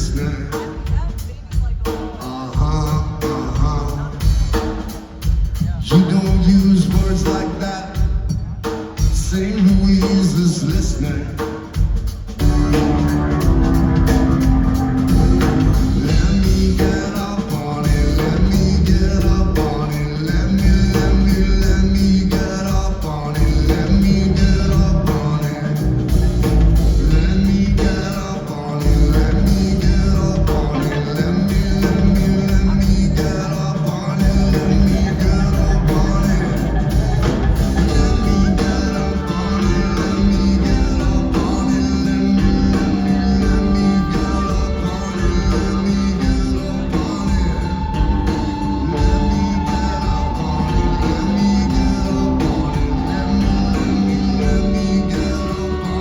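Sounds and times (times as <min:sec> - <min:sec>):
rock band playing live: 0:00.0 - 0:56.0
repeating bass line: 0:12.4 - 0:28.2, 0:28.8 - 0:56.0.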